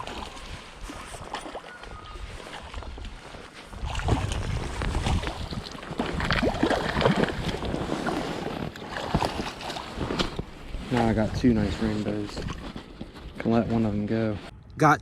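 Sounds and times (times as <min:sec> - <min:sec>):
wind on microphone: 0:00.0 - 0:08.4
creek water splashing: 0:00.0 - 0:11.3.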